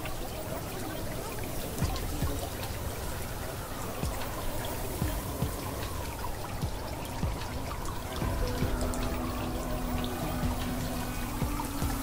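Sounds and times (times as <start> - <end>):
running water trickling: 0.0 - 12.0.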